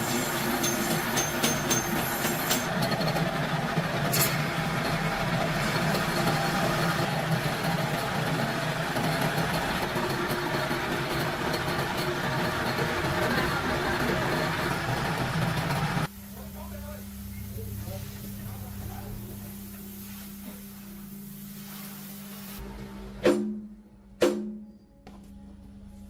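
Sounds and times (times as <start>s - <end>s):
small gasoline engine idling: 2.0s - 16.1s.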